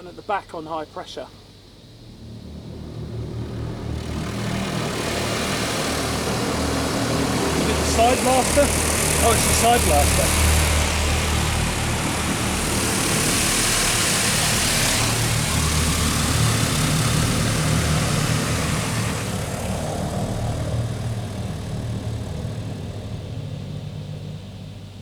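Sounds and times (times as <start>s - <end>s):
low machine hum: 0.0s - 25.0s
high-pressure water jets spraying car: 3.9s - 23.3s.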